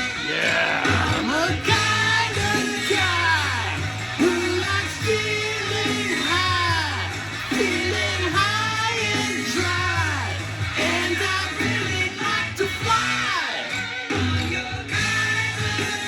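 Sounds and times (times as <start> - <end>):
steady bass line: 0.0 - 13.4, 14.1 - 16.0
guitar: 0.0 - 16.0
person singing sliding phrases: 0.2 - 3.0.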